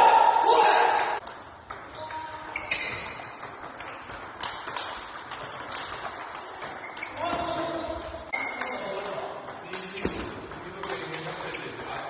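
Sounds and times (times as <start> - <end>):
table tennis ball clicks: 1.2 - 7.2.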